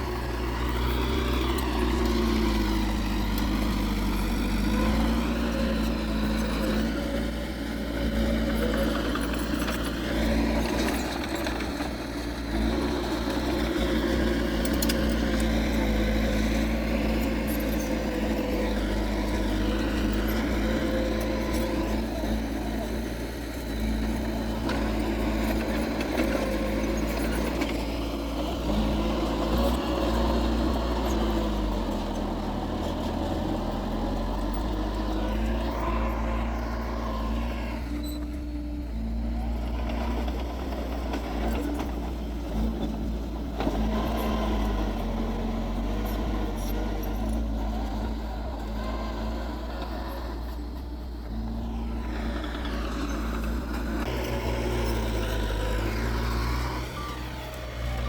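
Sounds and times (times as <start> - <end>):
heavy machinery diesel engines: 0.0 - 58.0.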